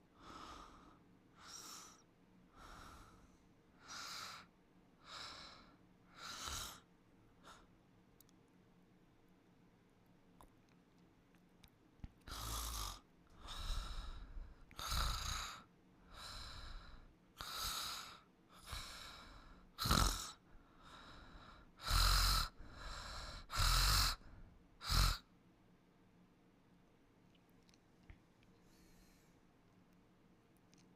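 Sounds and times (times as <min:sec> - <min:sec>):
person snoring: 0:12.3 - 0:25.2.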